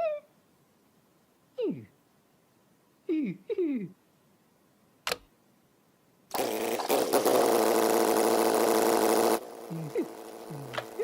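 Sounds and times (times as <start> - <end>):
small motor running: 6.3 - 11.0.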